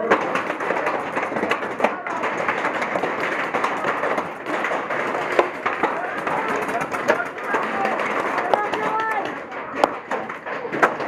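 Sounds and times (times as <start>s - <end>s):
paintball markers firing: 0.0s - 11.0s
indistinct shouting voices: 1.8s - 10.2s.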